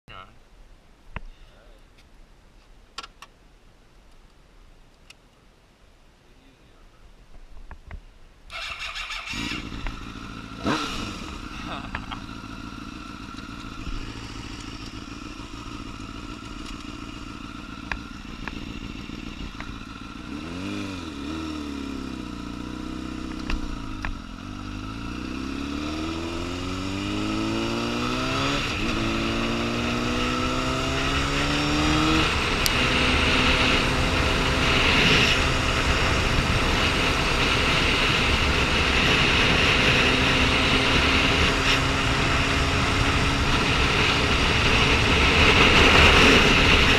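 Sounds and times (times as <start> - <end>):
motorcycle engine revving: 8.5 - 46.9
steady rushing noise: 31.4 - 46.9.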